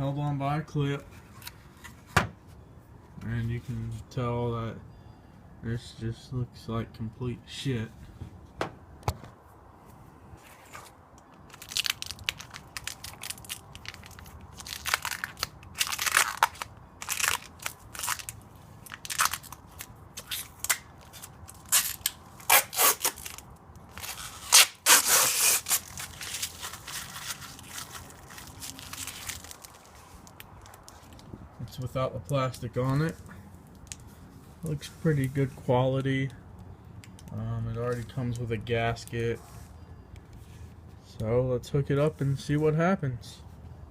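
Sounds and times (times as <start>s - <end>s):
plastic wrapping crinkling: 11.4s - 31.3s.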